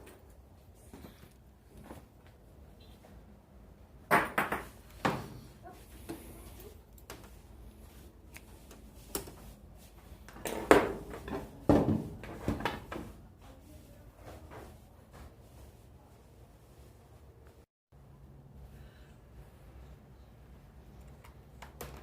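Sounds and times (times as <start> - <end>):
objects knocking and clattering: 10.3 - 13.1.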